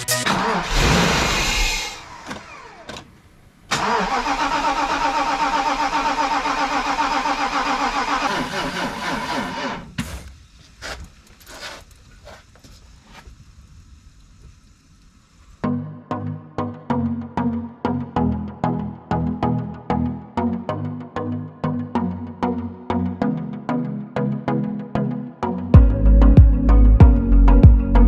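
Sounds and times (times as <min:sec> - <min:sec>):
car engine cranking on starter: 0:03.7 - 0:09.9.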